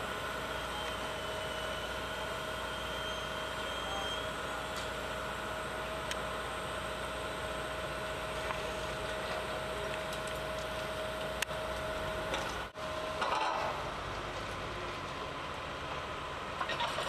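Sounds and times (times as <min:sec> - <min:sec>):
heavy machinery whining: 0:00.0 - 0:16.6.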